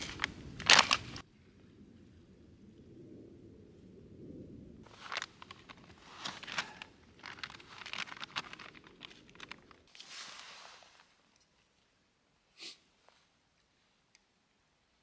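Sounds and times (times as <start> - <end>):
rustling handling noise: 0.0 - 1.2, 4.9 - 11.8.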